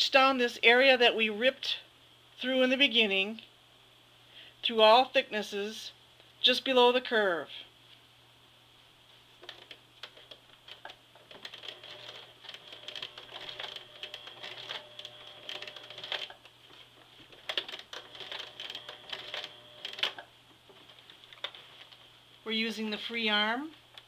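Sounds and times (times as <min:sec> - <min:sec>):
sewing machine stitching: 0:11.3 - 0:16.4, 0:17.3 - 0:20.2.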